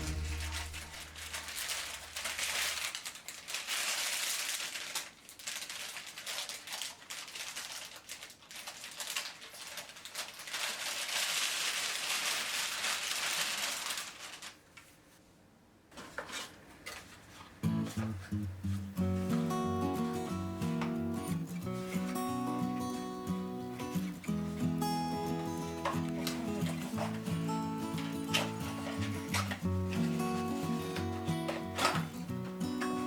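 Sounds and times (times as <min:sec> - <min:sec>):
plastic packaging crinkling: 0:00.0 - 0:15.0, 0:16.8 - 0:33.0.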